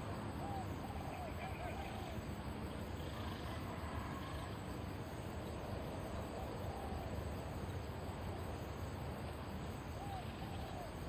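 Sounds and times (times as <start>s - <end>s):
insect-like hiss: 0.0s - 11.0s
dove cooing: 0.3s - 2.2s, 6.5s - 7.2s, 10.0s - 11.0s.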